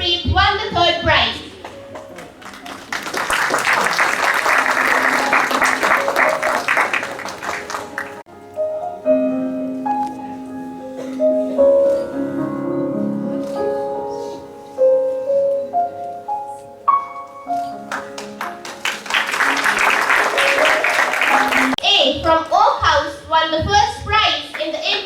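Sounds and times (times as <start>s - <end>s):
slow piano melody: 1.5s - 21.8s
audience applauding: 1.8s - 8.2s, 17.9s - 21.8s.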